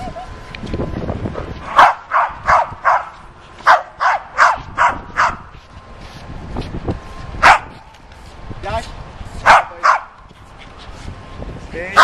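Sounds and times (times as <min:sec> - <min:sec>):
dog barking: 0:01.7 - 0:05.5, 0:07.4 - 0:07.8, 0:09.4 - 0:10.2.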